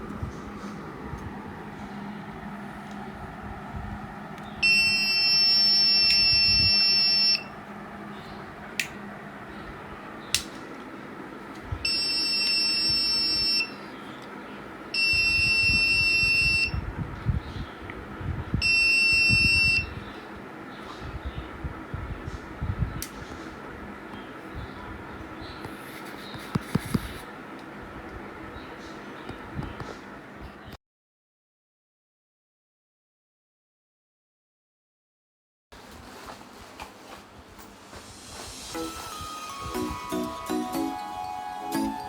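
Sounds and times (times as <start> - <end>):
high-pitched alarm buzzer: 4.6 - 7.5, 11.9 - 13.7.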